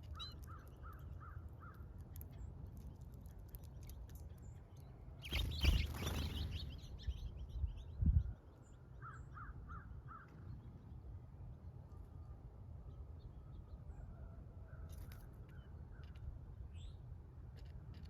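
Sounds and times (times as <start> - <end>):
birds chirping: 4.4 - 9.5.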